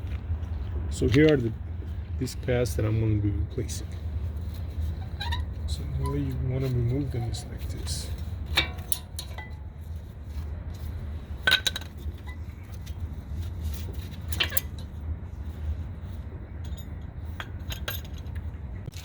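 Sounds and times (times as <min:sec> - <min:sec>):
steady low hum: 0:00.0 - 0:19.0
metallic clinks of brake pads: 0:05.1 - 0:09.8, 0:13.7 - 0:14.9, 0:16.6 - 0:19.0.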